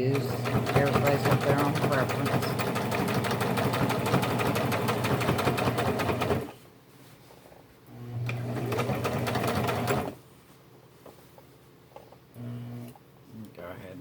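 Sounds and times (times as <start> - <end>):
sewing machine stitching: 0.0 - 6.5, 8.0 - 10.2.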